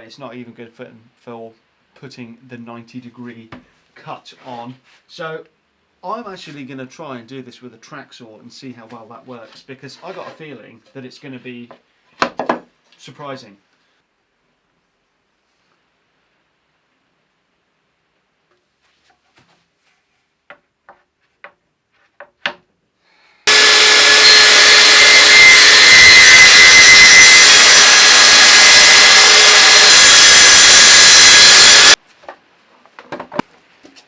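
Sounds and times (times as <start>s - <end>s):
track saw cutting wood: 23.5s - 32.0s.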